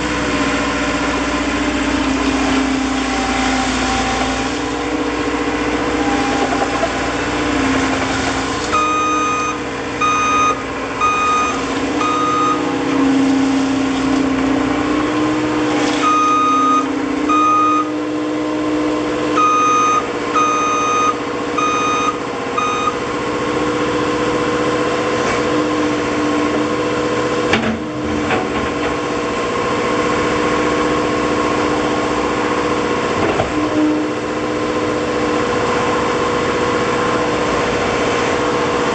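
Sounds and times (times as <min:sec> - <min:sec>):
diesel engine running: 0:00.0 - 0:38.9
backup alarm beeping: 0:08.7 - 0:12.8, 0:16.0 - 0:18.0, 0:19.4 - 0:23.0.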